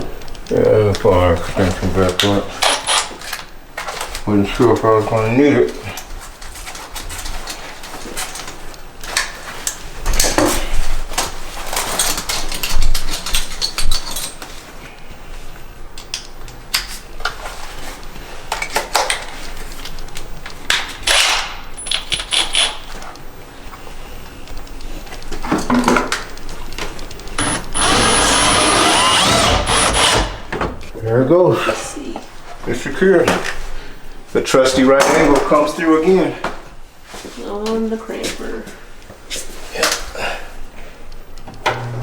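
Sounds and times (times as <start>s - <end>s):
cordless drill motor whir: 27.2s - 30.6s.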